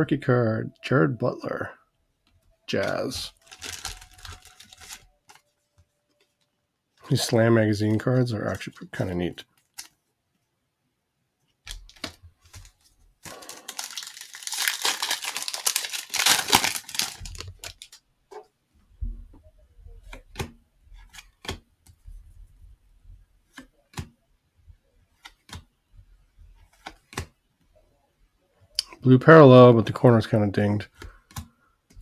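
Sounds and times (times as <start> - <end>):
cards clicking and snapping: 2.8 - 5.4, 11.7 - 18.0, 20.1 - 21.6, 25.2 - 25.7, 26.7 - 27.4
wrapper crinkling as torn open: 2.8 - 5.4, 13.3 - 18.0.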